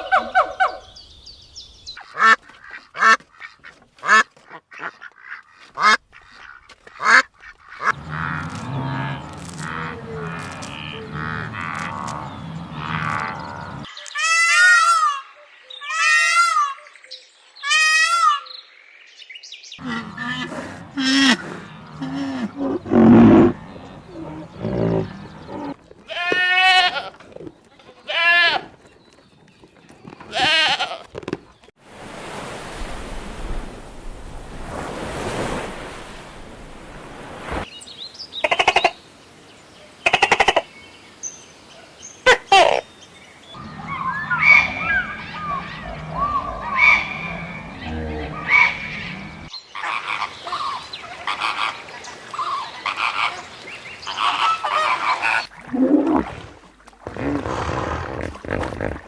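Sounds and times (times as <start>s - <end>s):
goat or sheep bleating: 26.1s - 27.2s, 27.9s - 28.7s, 30.3s - 31.1s.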